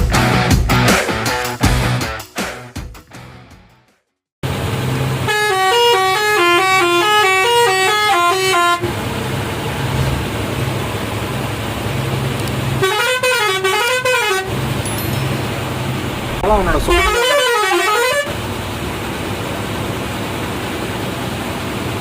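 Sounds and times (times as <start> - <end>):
bus engine hum: 4.4 - 22.0
air horn playing a tune: 5.3 - 8.8, 12.8 - 14.6, 16.9 - 18.3.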